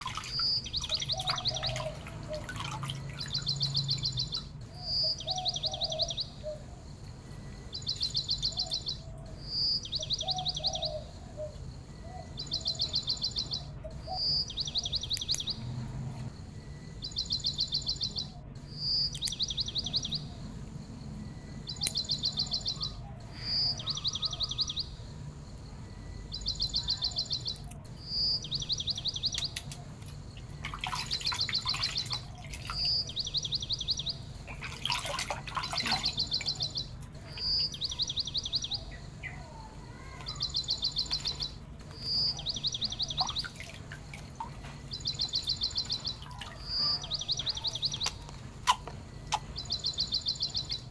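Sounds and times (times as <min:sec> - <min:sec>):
bird call with rattling trill: 0:00.0 - 0:06.6, 0:07.8 - 0:11.1, 0:12.0 - 0:15.6, 0:26.5 - 0:50.9.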